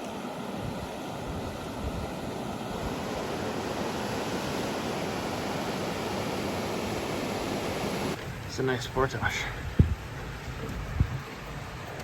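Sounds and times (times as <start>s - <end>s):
wind buffeting microphone: 0.5s - 5.7s, 9.5s - 12.0s.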